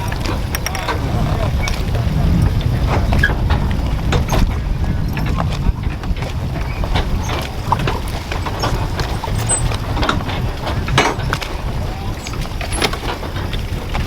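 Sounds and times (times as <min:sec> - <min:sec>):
boat hull knocking on water: 0:00.0 - 0:14.0
wind rumble on microphone: 0:00.0 - 0:14.0.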